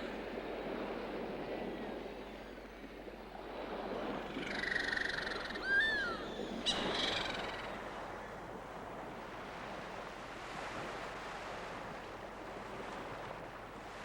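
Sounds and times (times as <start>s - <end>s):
surf washing: 0.0s - 14.0s
seabirds calling: 4.3s - 8.0s.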